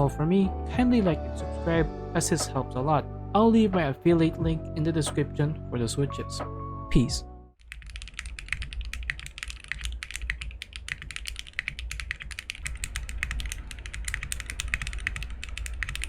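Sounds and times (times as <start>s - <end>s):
fast typing on mechanical keyboard: 7.6s - 16.0s.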